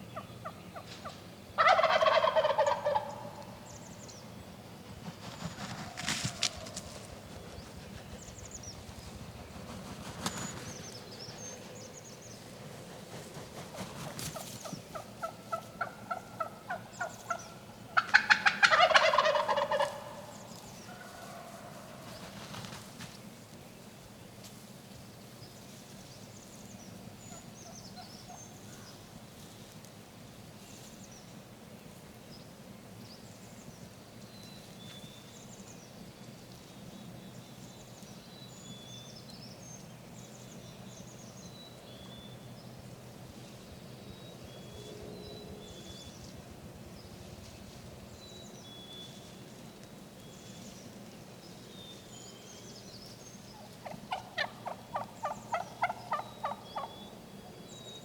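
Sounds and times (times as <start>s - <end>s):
turkey gobbling: 1.6s - 3.5s, 14.4s - 20.3s, 53.6s - 56.9s
faint songbird chirps: 30.6s - 58.0s.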